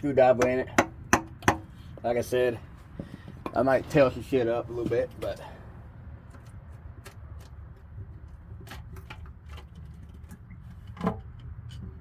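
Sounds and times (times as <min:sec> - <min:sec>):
metal knock: 0:00.4 - 0:01.7.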